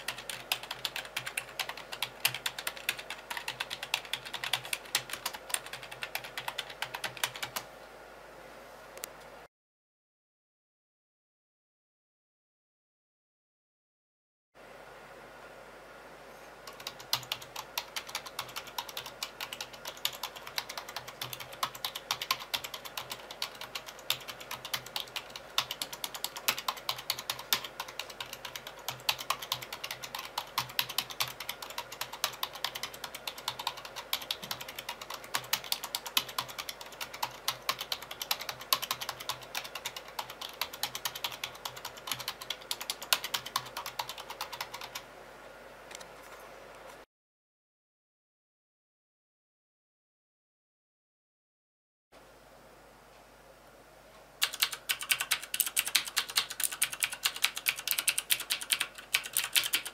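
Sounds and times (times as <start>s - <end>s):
mechanical keyboard typing: 0.0s - 7.6s, 16.7s - 45.0s, 54.4s - 59.9s.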